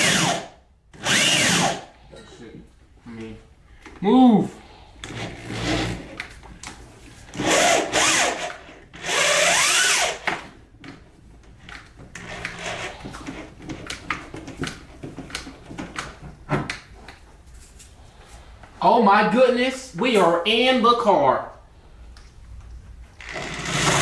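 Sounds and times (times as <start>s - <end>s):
power drill drilling: 0.0s - 1.9s, 7.3s - 10.5s, 12.2s - 13.4s, 23.2s - 24.0s.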